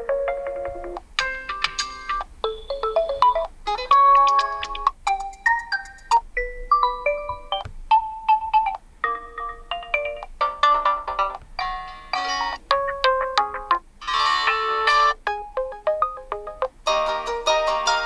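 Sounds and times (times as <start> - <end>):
phone alarm melodic tones: 2.4 - 4.6, 11.6 - 16.6.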